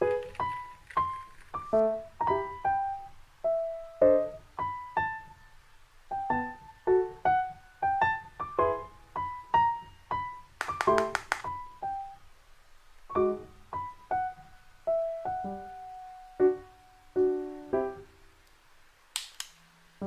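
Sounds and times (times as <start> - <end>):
piano melody: 0.0 - 12.4, 13.1 - 18.4.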